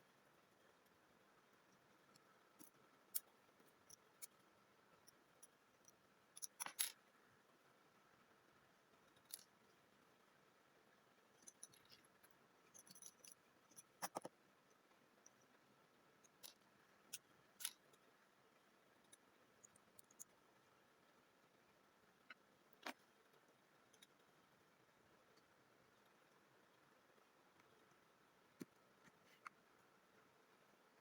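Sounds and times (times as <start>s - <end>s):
small tools clicking and tapping: 5.0s - 7.0s, 11.4s - 14.4s, 16.2s - 18.0s.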